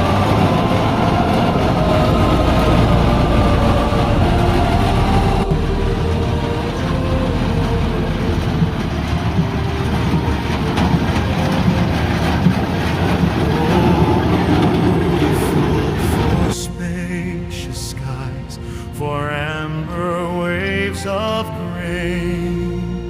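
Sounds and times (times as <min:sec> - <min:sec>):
hay baler clattering: 0:00.0 - 0:16.6
tractor engine under load: 0:00.0 - 0:17.3.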